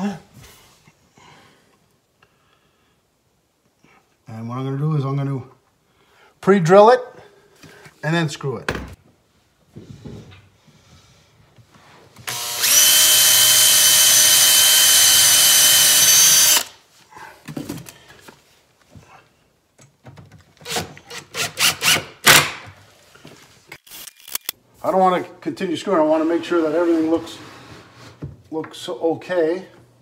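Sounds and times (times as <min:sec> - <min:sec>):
power drill boring into wood: 0:12.2 - 0:16.8, 0:20.6 - 0:22.4.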